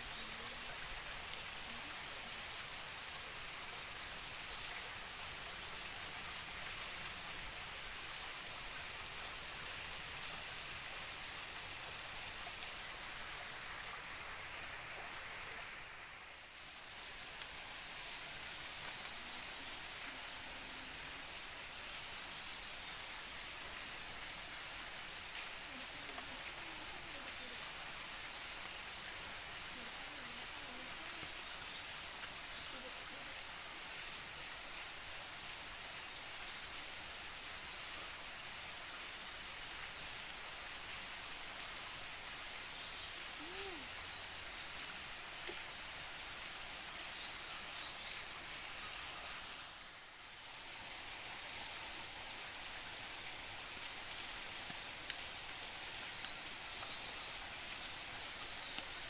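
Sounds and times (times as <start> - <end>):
high-pitched insect chorus: 0.0 - 59.0.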